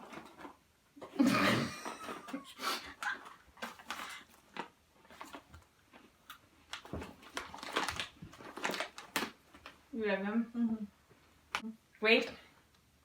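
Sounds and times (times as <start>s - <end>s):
wrapper crackling: 6.3s - 9.8s.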